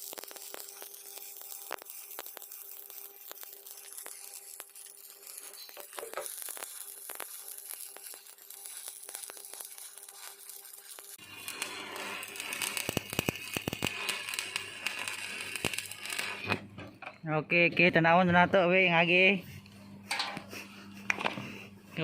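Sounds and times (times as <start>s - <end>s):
electric arc welding crackling: 0.0s - 16.7s.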